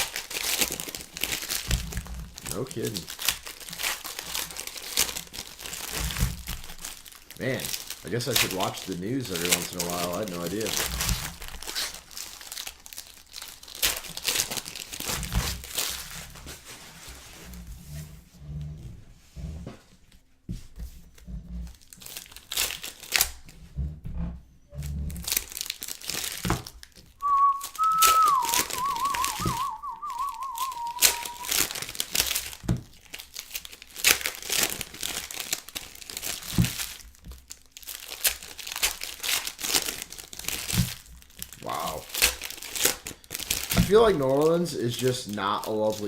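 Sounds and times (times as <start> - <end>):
card wrappers crinkling and tearing: 0.0 - 17.0, 21.7 - 23.5, 25.2 - 46.0
whistle-like warbling tone: 27.2 - 31.6.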